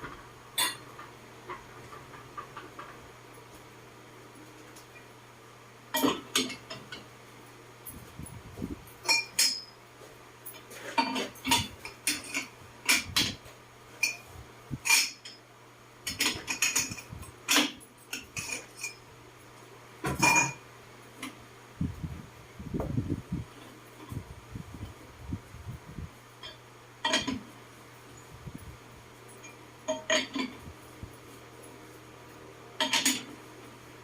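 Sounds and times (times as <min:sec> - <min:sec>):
faint steady hum: 0:00.0 - 0:34.0
metal tools clinking: 0:09.0 - 0:09.8.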